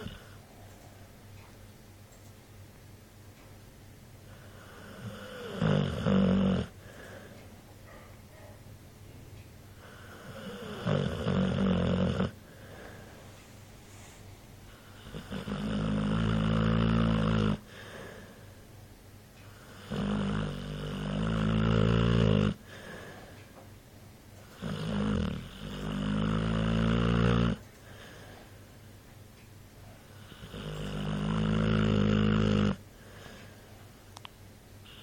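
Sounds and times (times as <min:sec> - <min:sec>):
dog snoring: 0:00.0 - 0:00.4, 0:04.3 - 0:07.3, 0:09.8 - 0:13.0, 0:14.7 - 0:18.2, 0:19.6 - 0:23.2, 0:24.4 - 0:28.3, 0:30.1 - 0:33.4
dog breathing: 0:06.6 - 0:08.6, 0:09.8 - 0:16.7, 0:17.5 - 0:18.6, 0:22.5 - 0:23.5, 0:27.5 - 0:28.7.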